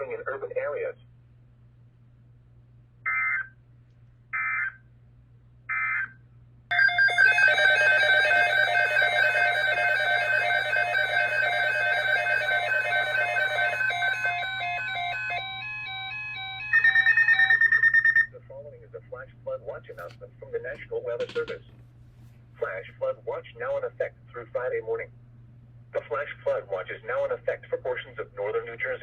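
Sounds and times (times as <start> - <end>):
emergency alert data tones: 6.7 - 18.3.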